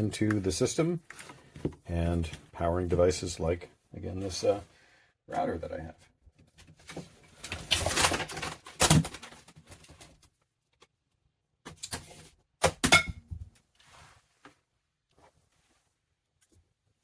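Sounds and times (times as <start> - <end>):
cable and plastic part rustling: 0.1 - 2.5, 6.4 - 11.0.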